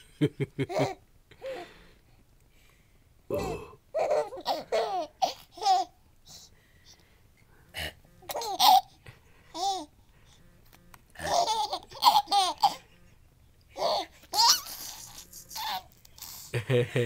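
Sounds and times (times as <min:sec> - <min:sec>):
baby giggling and babbling: 0:03.4 - 0:06.0, 0:08.2 - 0:10.0, 0:11.2 - 0:13.0, 0:13.7 - 0:16.5.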